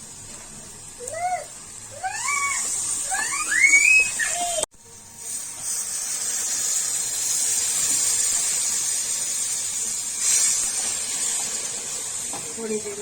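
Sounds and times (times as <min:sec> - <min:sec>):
food sizzling in a hot pan: 0:00.0 - 0:13.0.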